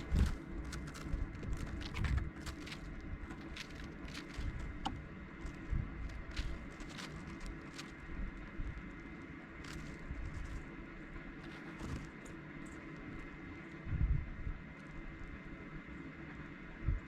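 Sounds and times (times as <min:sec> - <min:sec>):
bird ticks and chips: 0:00.0 - 0:13.9
low steady rumble: 0:00.0 - 0:17.0.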